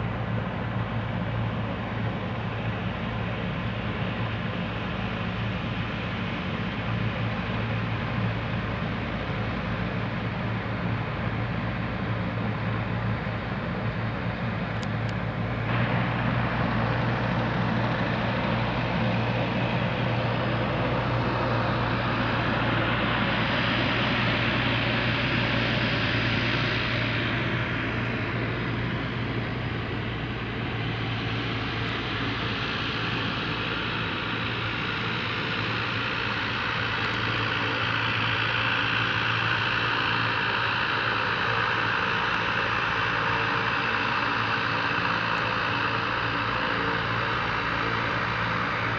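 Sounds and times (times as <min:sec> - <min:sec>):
turboprop propeller hum: 0:00.0 - 0:48.9
engine hiss: 0:15.6 - 0:48.9.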